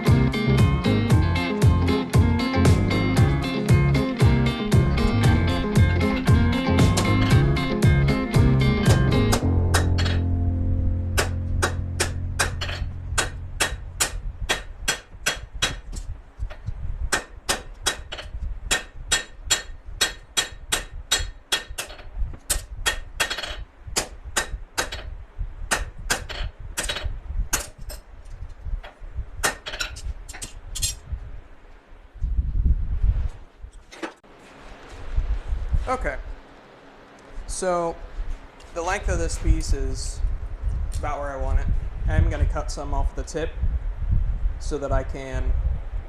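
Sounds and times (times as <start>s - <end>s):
low hum: 0.0s - 25.6s
hammer striking steel on anvil: 8.9s - 10.3s, 11.2s - 15.8s, 17.1s - 25.1s.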